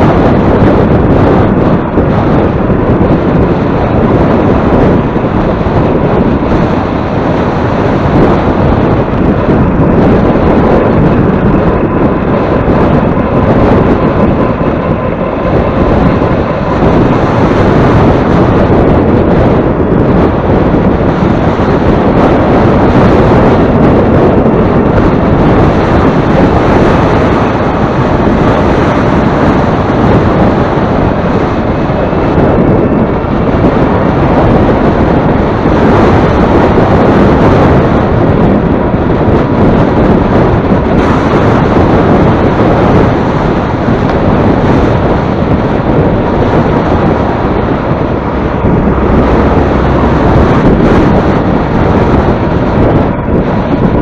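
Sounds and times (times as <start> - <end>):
wind buffeting microphone: 0.0 - 54.0
faint high whine: 46.2 - 52.7.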